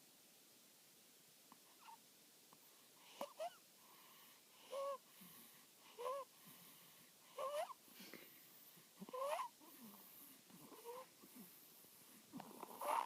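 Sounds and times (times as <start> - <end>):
animal snoring with whistling wheeze: 12.4 - 13.0.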